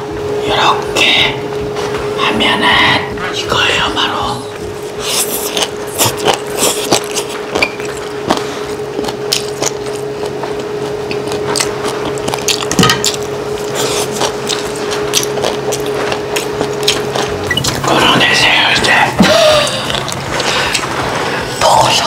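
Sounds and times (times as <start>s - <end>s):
faint steady hum: 0.0s - 22.0s
close-miked chewing: 4.5s - 22.0s
mouth clicks and smacks: 5.0s - 17.8s.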